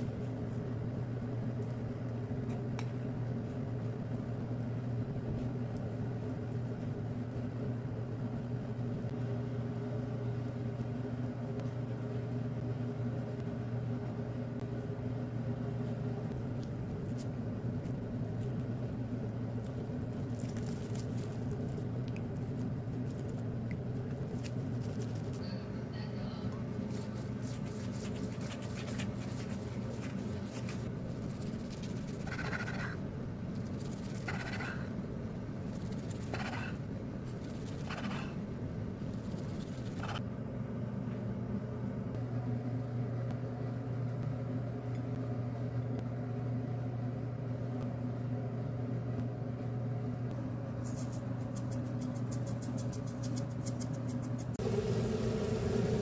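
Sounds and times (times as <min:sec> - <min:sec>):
kitchen appliance humming: 0:54.6 - 0:56.0.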